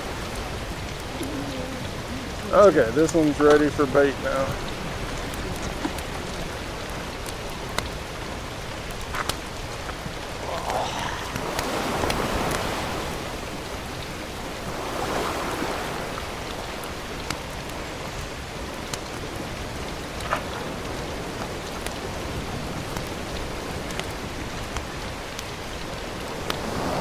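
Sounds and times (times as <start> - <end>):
water lapping at shore: 0.0 - 27.0
wind: 0.0 - 27.0.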